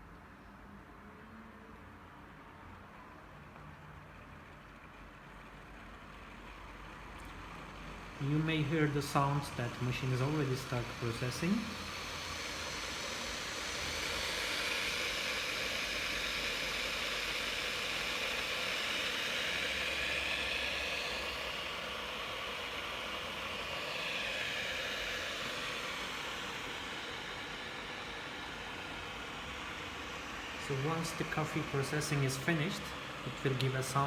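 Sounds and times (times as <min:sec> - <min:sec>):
coffee machine hissing: 0:05.0 - 0:34.0.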